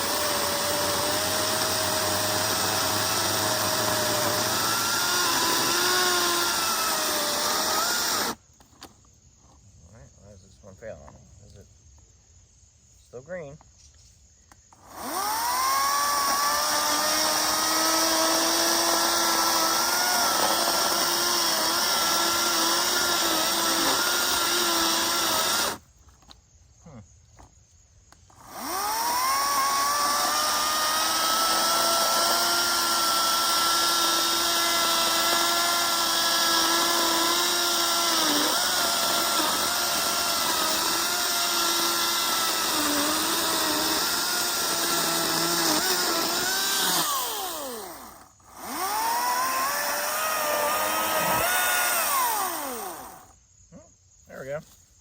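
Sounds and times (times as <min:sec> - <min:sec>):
electric chainsaw cutting log: 0:00.0 - 0:08.4, 0:14.8 - 0:25.8, 0:28.3 - 0:53.4.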